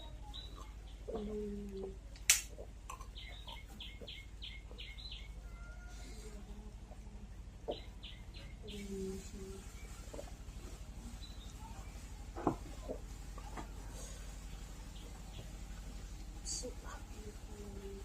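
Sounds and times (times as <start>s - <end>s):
sharp click: 2.2s - 2.5s.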